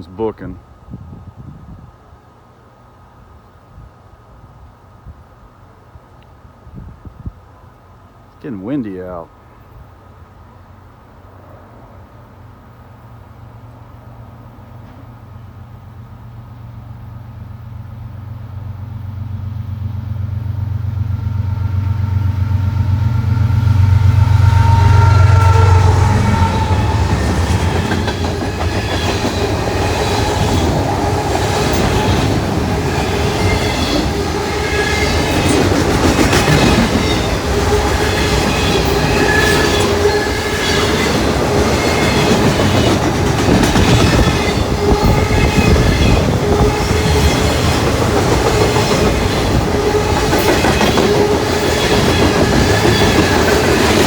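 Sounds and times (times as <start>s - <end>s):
diesel locomotive drone: 0.2s - 54.0s
rush of train cars: 21.0s - 54.0s
wheels clattering over rail joints: 27.1s - 54.0s.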